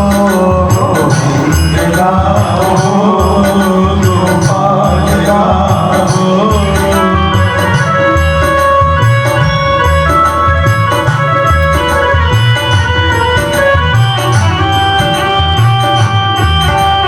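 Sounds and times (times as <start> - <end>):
harmonium chords: 0.0 - 17.0
steady hand drum beat: 0.0 - 17.0
wavering sung melody: 0.0 - 17.0.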